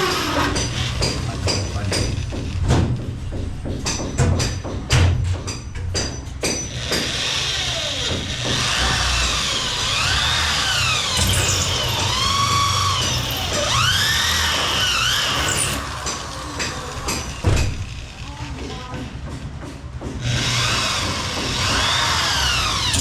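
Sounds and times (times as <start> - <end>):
drill squeal: 0.0 - 0.9, 8.7 - 16.0
power drill whining: 0.0 - 1.0, 6.7 - 18.3, 20.2 - 23.0.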